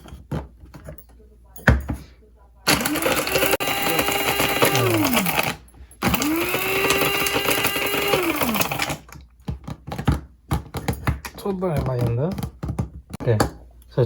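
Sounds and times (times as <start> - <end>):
mixer grinder motor whine: 2.7 - 9.1.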